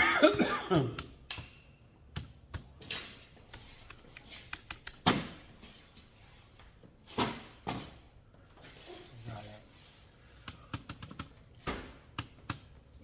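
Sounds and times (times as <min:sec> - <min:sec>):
keyboard keys clicking: 0:10.5 - 0:11.3.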